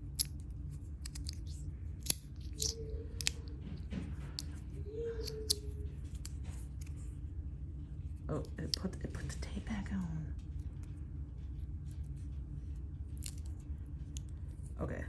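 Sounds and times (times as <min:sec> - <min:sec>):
metal fidget slider clicking: 0:01.0 - 0:03.4.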